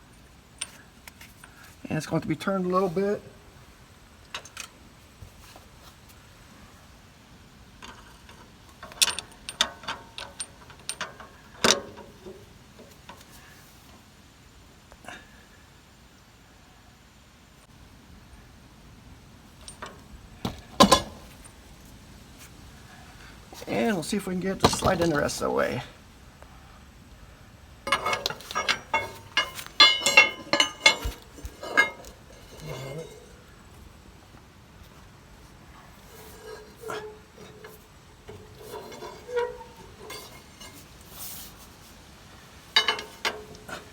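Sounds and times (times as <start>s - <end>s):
metal clanking on metal: 7.8s - 13.3s, 19.6s - 21.6s, 23.6s - 25.8s, 27.9s - 34.0s, 35.7s - 41.7s, 42.5s - 43.9s
steel parts clinking: 7.8s - 13.3s, 19.6s - 21.8s, 23.6s - 25.8s, 27.9s - 34.0s, 35.6s - 43.9s.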